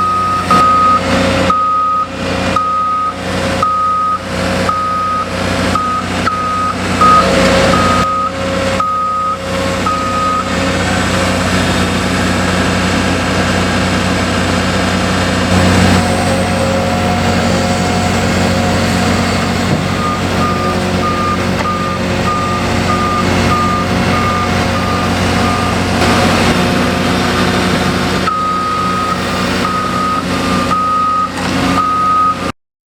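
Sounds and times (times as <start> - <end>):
backup alarm beeping: 0.0 - 10.5, 15.5 - 26.6, 28.2 - 32.5
diesel engine drone: 0.0 - 32.5.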